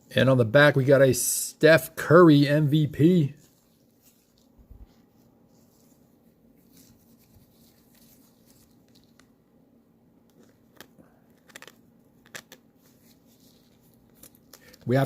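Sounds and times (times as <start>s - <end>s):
cards and wrapper rustling: 3.0s - 9.3s, 10.3s - 15.0s.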